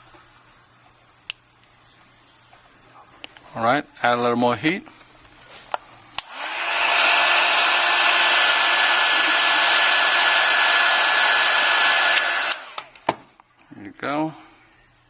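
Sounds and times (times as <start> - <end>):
hot-air blower running: 6.2 - 13.1.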